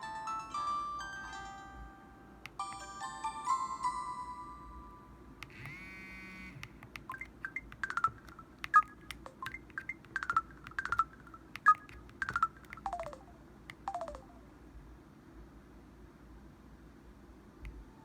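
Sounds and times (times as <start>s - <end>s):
phone electronic tones: 5.5s - 14.4s.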